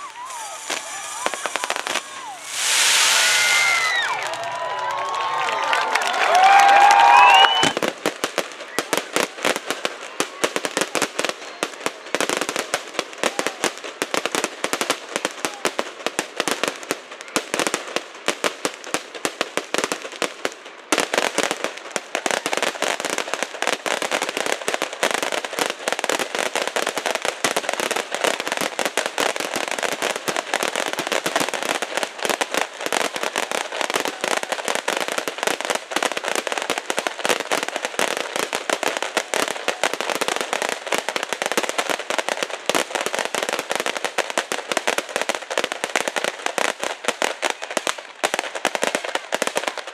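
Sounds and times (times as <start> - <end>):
fireworks crackling: 0.0 - 49.9.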